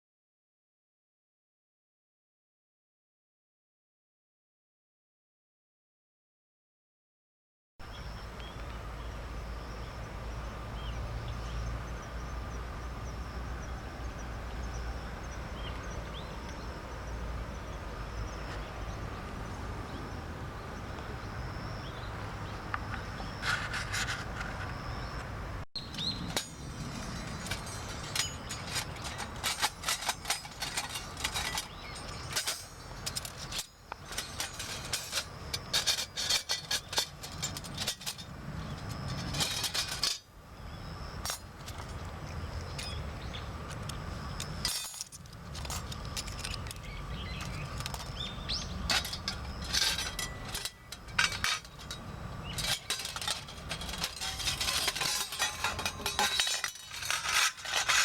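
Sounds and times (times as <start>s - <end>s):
metal panels clinking and scraping: 25.8s - 40.3s, 41.2s - 42.1s, 43.6s - 58.0s.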